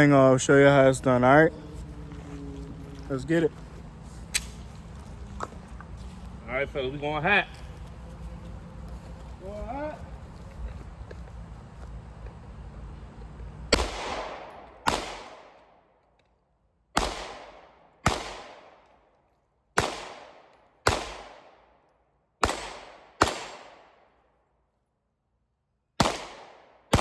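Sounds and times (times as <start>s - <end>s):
handgun shots with echo: 13.7s - 15.7s, 17.0s - 18.8s, 19.8s - 21.5s, 22.4s - 23.8s, 26.0s - 27.0s.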